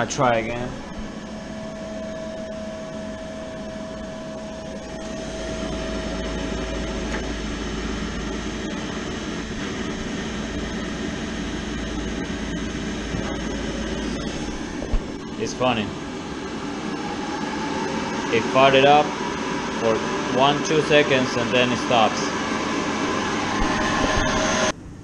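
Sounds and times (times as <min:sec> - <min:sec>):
boiler inducer motor humming: 0:00.0 - 0:25.0
deep rumble: 0:00.6 - 0:17.5.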